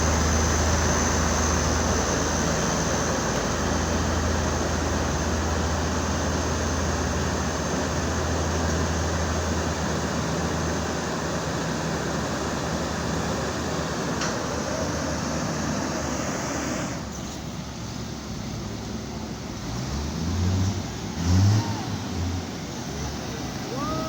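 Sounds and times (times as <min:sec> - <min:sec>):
heavy machinery engine rumble: 0:00.0 - 0:24.0
even wash of noise: 0:20.4 - 0:24.0.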